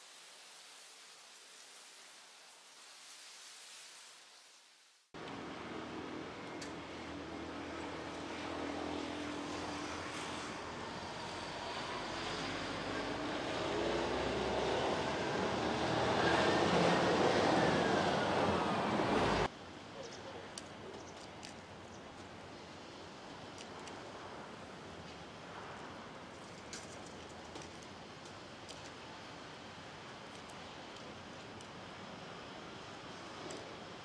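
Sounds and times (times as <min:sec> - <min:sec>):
passing vehicle engine: 0:07.2 - 0:19.5.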